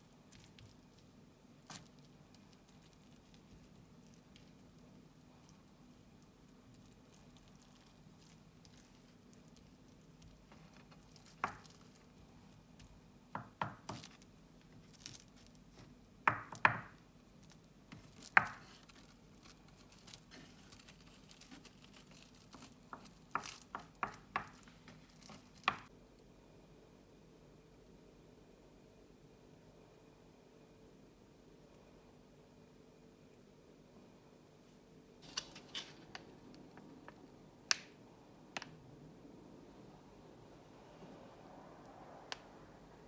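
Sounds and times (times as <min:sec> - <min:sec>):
faint low hum: 0:24.6 - 0:43.0.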